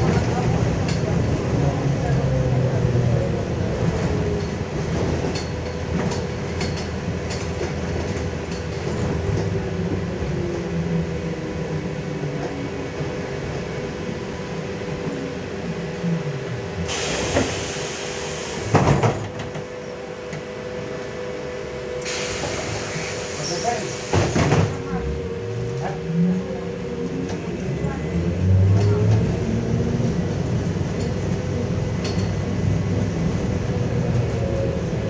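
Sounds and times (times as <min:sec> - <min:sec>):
bus body and tyre noise: 0:00.0 - 0:35.0
air hiss: 0:16.9 - 0:18.9, 0:22.0 - 0:24.8.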